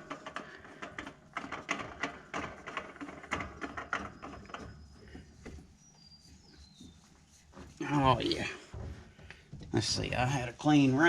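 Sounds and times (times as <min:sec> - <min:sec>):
light clicks and knocks of tools: 0:00.0 - 0:05.8
rustling: 0:00.0 - 0:11.0.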